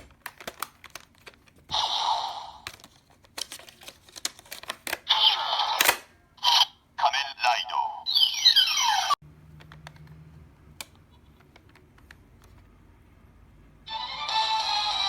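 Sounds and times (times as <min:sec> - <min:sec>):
electronic toy sound effects: 0:05.1 - 0:09.2.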